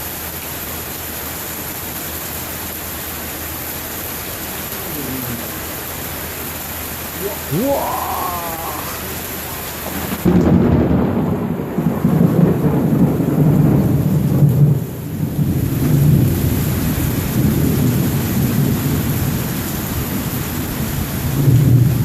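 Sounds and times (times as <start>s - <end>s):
steady rain: 0.0s - 22.0s
thunder rumbling: 9.8s - 16.3s.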